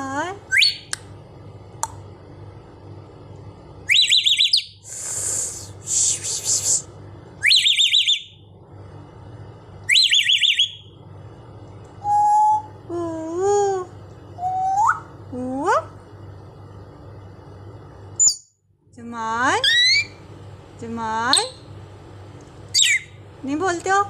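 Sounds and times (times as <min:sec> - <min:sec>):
parrot trilled whistles: 0:03.9 - 0:04.8, 0:07.4 - 0:08.4, 0:14.4 - 0:15.1
harsh breathy bursts: 0:04.8 - 0:06.9.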